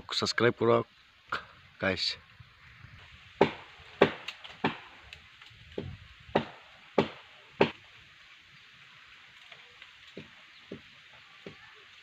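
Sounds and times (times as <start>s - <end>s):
blade chopping into wood: 3.4s - 4.9s, 5.8s - 7.8s.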